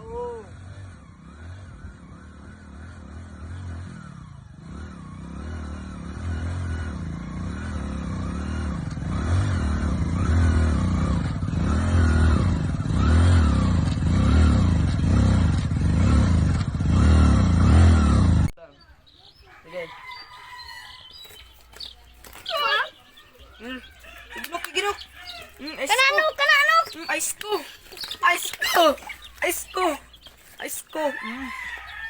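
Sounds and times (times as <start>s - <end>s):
vehicle-like mechanical sound: 0.5s - 18.5s.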